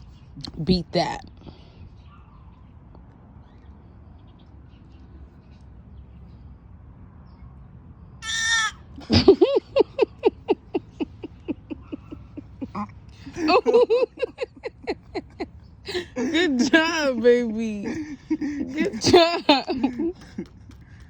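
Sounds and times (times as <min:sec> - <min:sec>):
rapid laughter: 0:09.0 - 0:17.1, 0:17.8 - 0:21.0.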